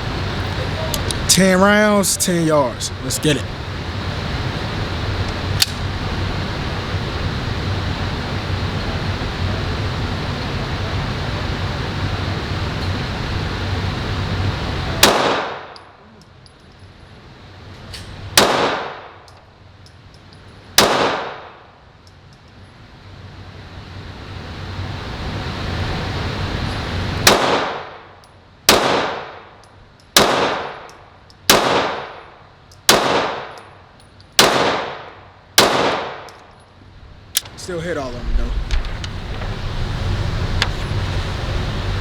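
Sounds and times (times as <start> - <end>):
pistol shots echoing indoors: 34.4 - 36.3.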